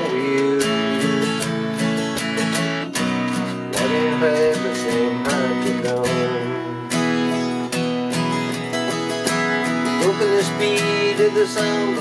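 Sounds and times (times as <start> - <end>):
man singing: 0.0 - 2.5, 3.3 - 7.3, 9.6 - 12.0
acoustic guitar strumming: 0.0 - 12.0.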